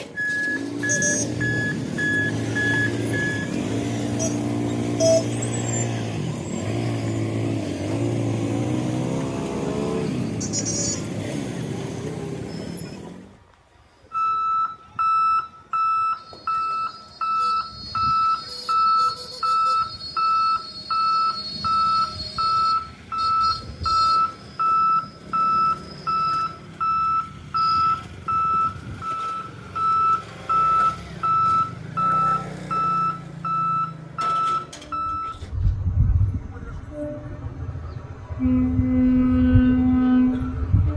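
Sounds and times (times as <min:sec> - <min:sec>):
level-crossing warning beeps: 0:00.2 - 0:03.6, 0:05.0 - 0:05.7, 0:14.1 - 0:35.5
low rumble: 0:35.4 - 0:40.9.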